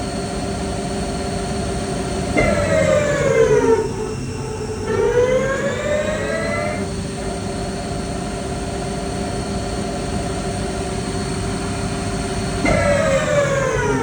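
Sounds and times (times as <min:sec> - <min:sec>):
lathe spindle whine: 0:00.0 - 0:14.0.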